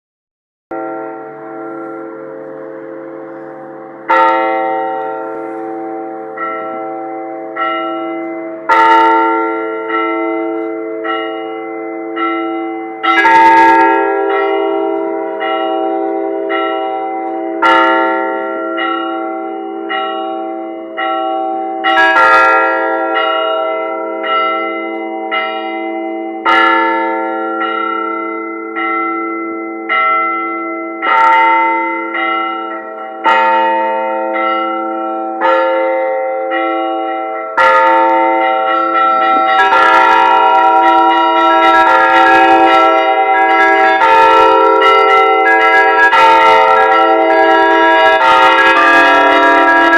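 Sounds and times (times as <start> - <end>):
church bells ringing: 0.7 - 49.9.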